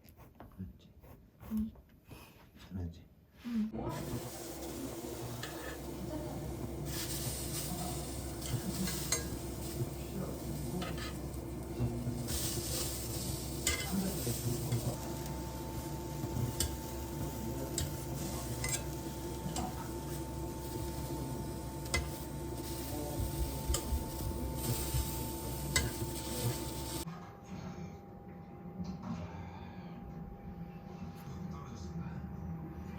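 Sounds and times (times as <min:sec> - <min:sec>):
utensil scraping a pan: 0:03.9 - 0:06.0, 0:10.6 - 0:11.4, 0:12.2 - 0:15.0, 0:16.2 - 0:21.0
food sizzling in a frying pan: 0:03.9 - 0:27.1.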